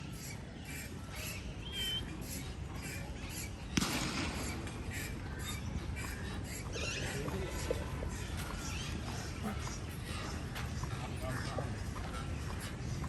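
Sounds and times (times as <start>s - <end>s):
birds calling: 0.0s - 13.0s
sharp crack: 3.7s - 4.6s.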